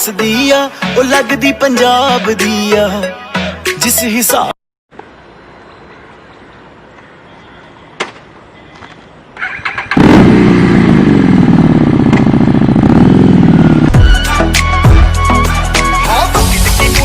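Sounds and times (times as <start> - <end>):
music: 0.0 - 4.6, 13.9 - 17.0
motorcycle engine revving: 9.4 - 14.0.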